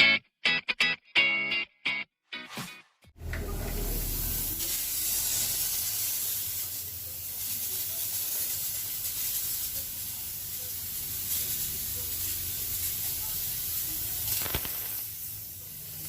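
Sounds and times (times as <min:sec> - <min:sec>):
steady hiss: 0:03.8 - 0:16.0.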